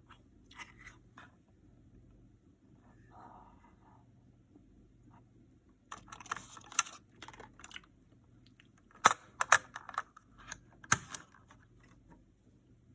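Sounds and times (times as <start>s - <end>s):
computer hardware clicks and rattles: 5.9s - 12.0s.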